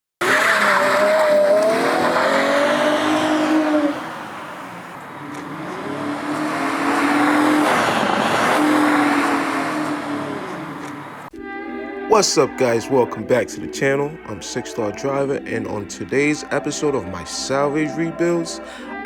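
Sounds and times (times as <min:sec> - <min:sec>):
car engine running hard: 0:00.2 - 0:11.3.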